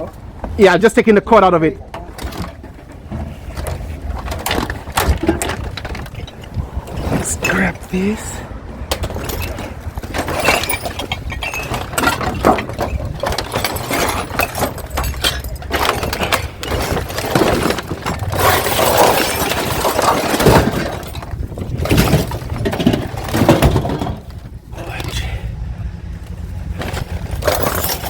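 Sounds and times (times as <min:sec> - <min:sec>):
junk clattering in a skip: 0:00.0 - 0:24.7, 0:26.1 - 0:28.0
shattering impacts: 0:08.9 - 0:24.3.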